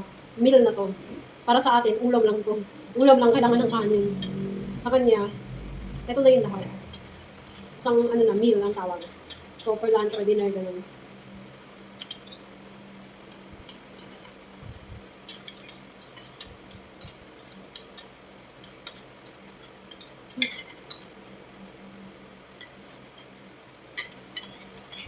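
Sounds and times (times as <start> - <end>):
faint steady hum: 0.0 - 25.0
cutlery clinking against dishes: 8.6 - 10.5, 12.0 - 12.4, 13.3 - 14.4, 15.2 - 21.1, 24.0 - 25.0.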